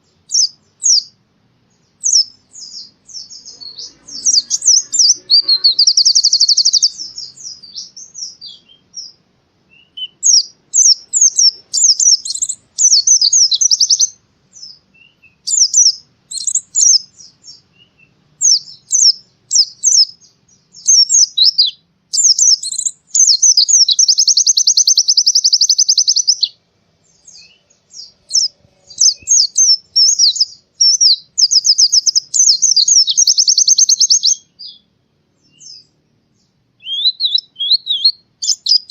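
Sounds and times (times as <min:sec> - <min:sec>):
bird chirping: 0:00.0 - 0:38.9
bird fast even trill: 0:03.5 - 0:07.5.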